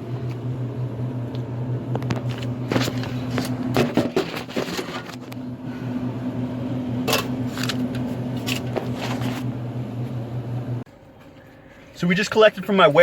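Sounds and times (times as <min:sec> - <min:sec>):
steady low hum: 0:00.0 - 0:13.0
handling clicks and rustles: 0:01.9 - 0:05.4.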